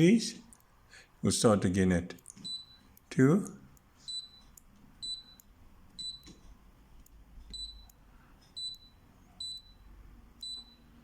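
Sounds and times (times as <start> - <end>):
control panel beeps: 2.2 - 3.1, 3.8 - 6.4, 7.5 - 11.0.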